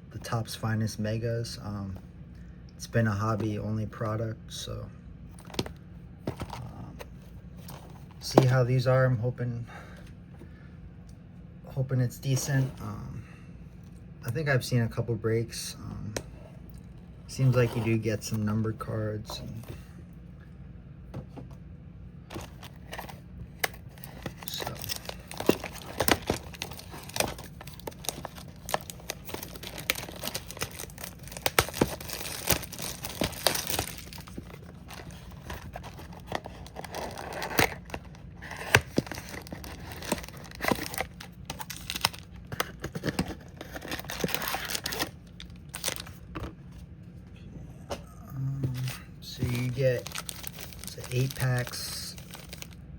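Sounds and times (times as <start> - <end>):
plastic wrapping crinkling and tearing: 22.3 - 46.2, 49.3 - 52.8.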